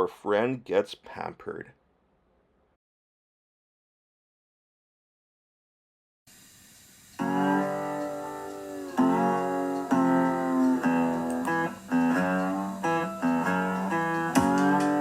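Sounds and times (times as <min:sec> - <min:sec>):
acoustic guitar chords: 0:07.2 - 0:15.0.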